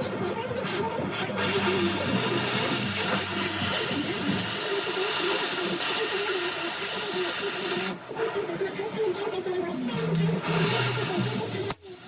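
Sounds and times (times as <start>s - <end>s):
welding arc hissing: 0.6s - 8.0s, 10.0s - 12.0s.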